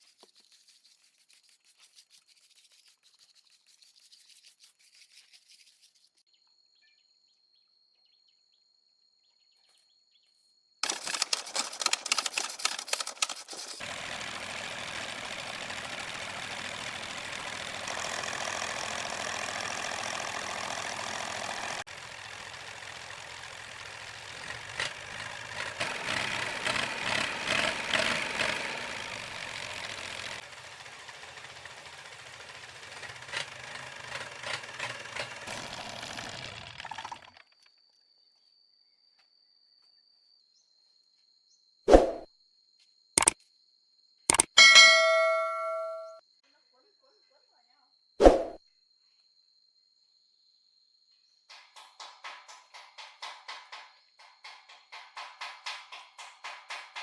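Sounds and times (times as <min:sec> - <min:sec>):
engine knocking rapidly: 0:10.8 - 0:37.6, 0:51.5 - 0:57.0
thin high whine: 0:44.6 - 0:46.2.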